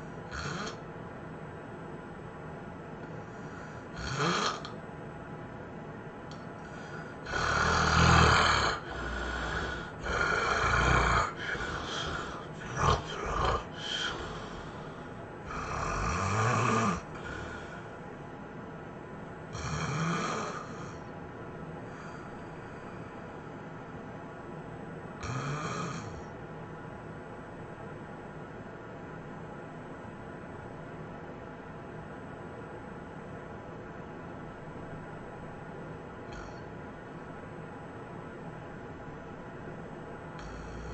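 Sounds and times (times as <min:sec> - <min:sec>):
person snoring loudly: 0:00.3 - 0:00.8, 0:03.9 - 0:04.7, 0:06.7 - 0:14.8, 0:15.5 - 0:17.8, 0:19.5 - 0:21.0, 0:25.2 - 0:26.2, 0:40.4 - 0:40.9.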